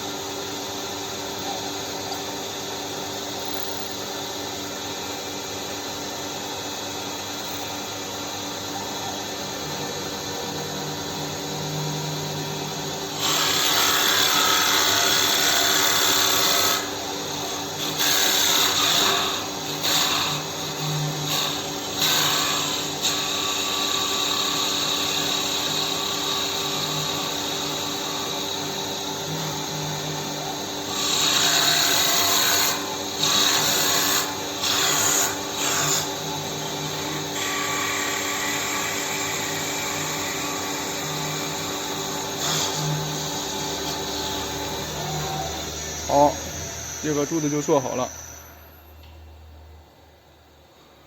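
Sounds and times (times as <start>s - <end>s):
lathe motors running: 0.0s - 50.0s
cutter cutting wood: 10.8s - 48.5s.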